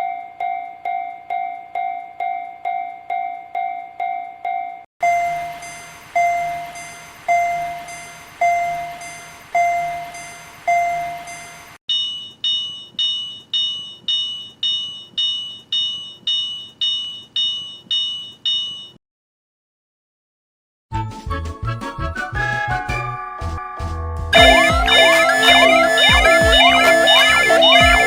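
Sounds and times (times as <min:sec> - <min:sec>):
railroad crossing bells: 0:00.0 - 0:11.8, 0:24.4 - 0:28.0.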